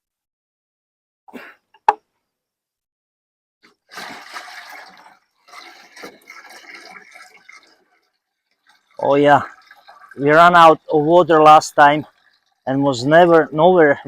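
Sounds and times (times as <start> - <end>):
water splashing and gurgling: 3.6 - 14.0.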